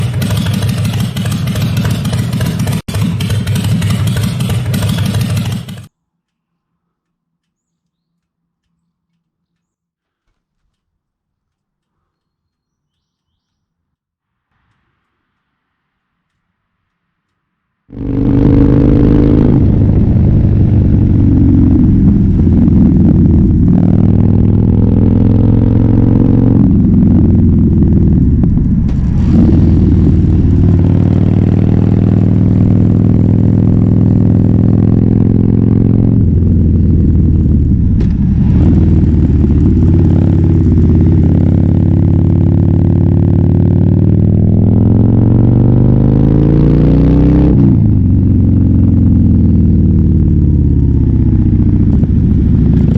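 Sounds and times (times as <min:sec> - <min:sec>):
motorcycle engine revving through gears: 0:00.0 - 0:05.9, 0:17.9 - 0:52.9.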